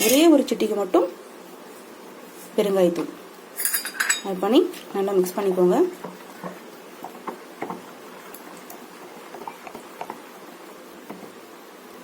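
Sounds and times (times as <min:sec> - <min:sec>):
batter being stirred in bowl: 0:04.4 - 0:11.8.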